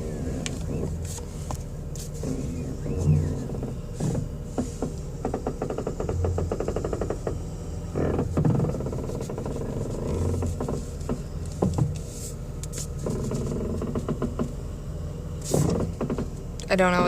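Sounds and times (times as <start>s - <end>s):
low steady hum: 0.0s - 17.0s
rapid steering clicks: 0.0s - 17.0s.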